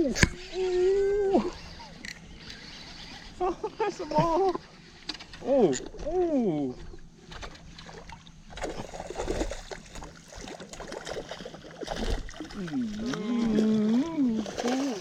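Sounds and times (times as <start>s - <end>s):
water splashing: 7.7s - 15.0s
person's wavering vocal call: 12.6s - 15.0s.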